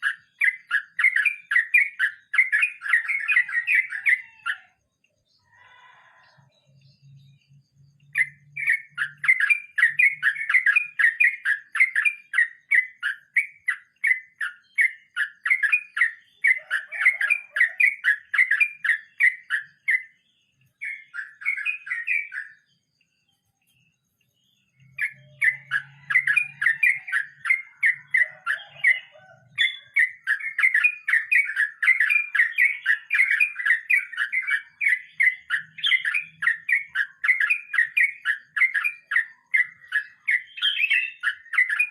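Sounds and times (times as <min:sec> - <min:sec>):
bird singing ringing notes: 0:00.0 - 0:41.9.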